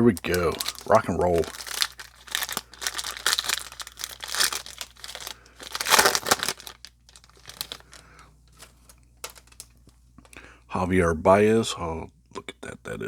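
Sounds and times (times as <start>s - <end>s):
card pack wrapper tearing: 0.0s - 9.7s
wrapper crinkling and rustling: 0.0s - 10.0s.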